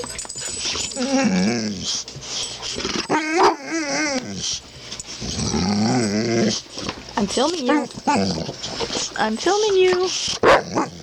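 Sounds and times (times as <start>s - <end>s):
dog groaning: 0.8s - 4.6s, 5.2s - 11.0s
dog warbling whine: 0.9s - 1.9s.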